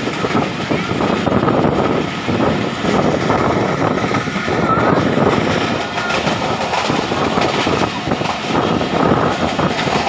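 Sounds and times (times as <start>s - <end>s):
train rumbling on rails: 0.0s - 10.0s
wind buffeting microphone: 0.0s - 10.0s.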